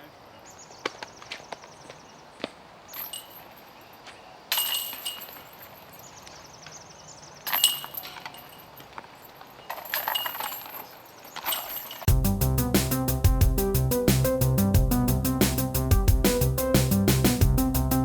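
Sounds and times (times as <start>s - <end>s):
disc golf basket chains jangling: 2.9s - 6.4s, 7.4s - 12.1s.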